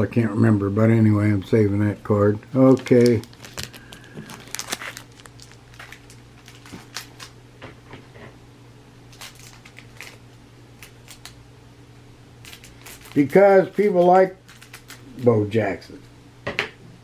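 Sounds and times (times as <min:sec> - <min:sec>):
steady low hum: 0:00.0 - 0:17.0
cards clicking and rustling: 0:02.6 - 0:07.4, 0:12.4 - 0:15.4.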